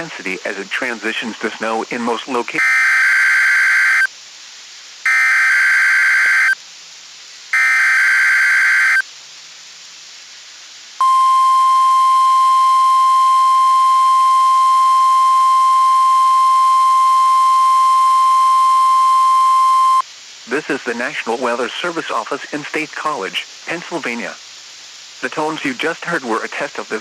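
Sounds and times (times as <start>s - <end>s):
radio hiss: 0.0s - 27.0s
steady warning alarm tone: 2.6s - 4.1s, 5.1s - 6.6s, 7.6s - 9.0s, 11.0s - 20.0s
buzzing digital data bursts: 7.6s - 9.0s.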